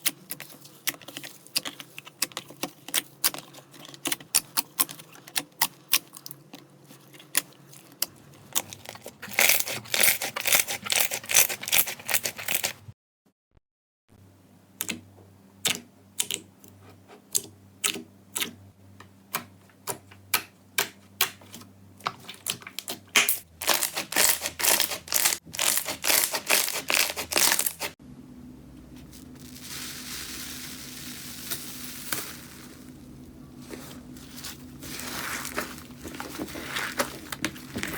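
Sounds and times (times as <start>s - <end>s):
slime clicking and crackling: 22.3s - 27.9s.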